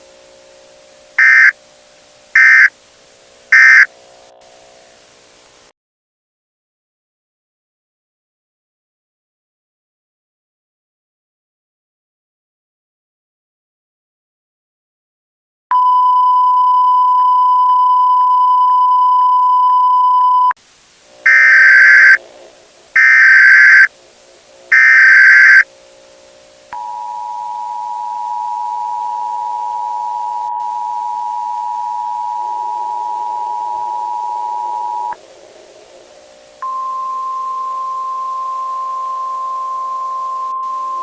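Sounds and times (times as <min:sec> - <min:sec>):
screechy data header bursts: 0:01.2 - 0:01.5, 0:02.4 - 0:02.7, 0:03.5 - 0:03.9, 0:21.3 - 0:22.2, 0:23.0 - 0:23.9, 0:24.7 - 0:25.6
steady test tone: 0:01.2 - 0:01.5, 0:02.4 - 0:02.7, 0:03.5 - 0:03.9, 0:21.3 - 0:22.2, 0:23.0 - 0:23.9, 0:24.7 - 0:25.6
two-tone attention signal: 0:01.2 - 0:01.5, 0:02.4 - 0:02.7, 0:03.5 - 0:03.9, 0:21.3 - 0:22.2, 0:23.0 - 0:23.9, 0:24.7 - 0:25.6.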